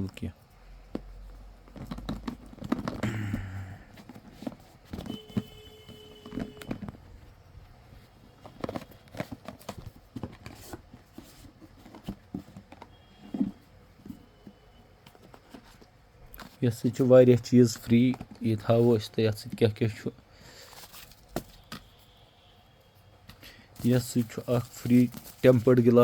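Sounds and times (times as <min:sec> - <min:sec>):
handling box and packaging: 0:00.8 - 0:19.1, 0:20.5 - 0:22.2, 0:23.7 - 0:26.0.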